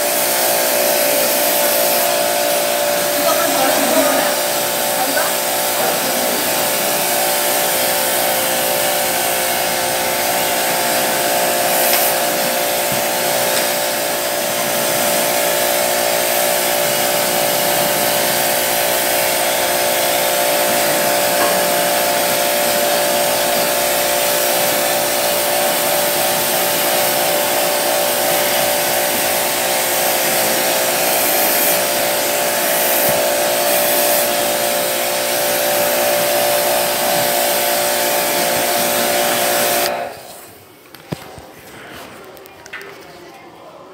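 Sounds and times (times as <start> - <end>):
cleaning machine motor whine: 0.0 - 40.4
spray hiss: 0.0 - 40.4.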